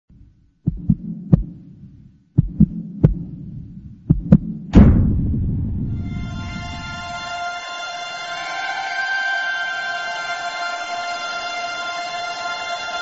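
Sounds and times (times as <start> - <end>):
deep heartbeat-like thuds: 0.1 - 7.3
low hum: 0.1 - 7.5
big ringing boom: 4.7 - 7.5
music with sustained notes: 5.9 - 13.0.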